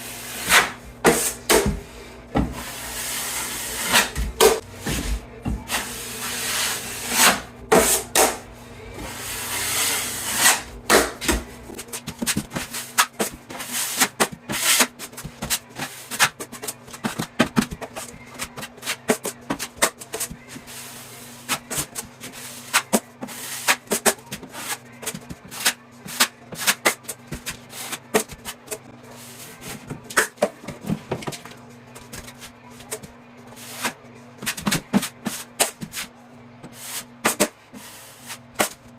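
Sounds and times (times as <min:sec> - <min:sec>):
steady low hum: 0:00.0 - 0:38.9
drywall knife scraping wall: 0:09.2 - 0:11.1, 0:11.8 - 0:24.8.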